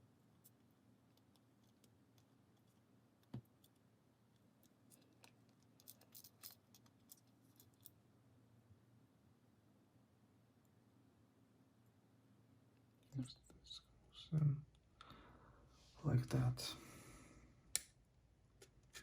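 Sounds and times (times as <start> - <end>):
small plastic parts clicking: 4.4 - 8.0.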